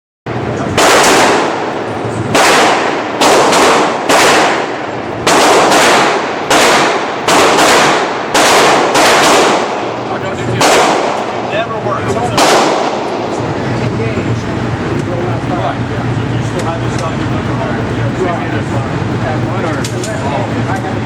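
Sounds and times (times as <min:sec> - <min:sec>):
pistol gunshots with echo: 0:00.3 - 0:13.4.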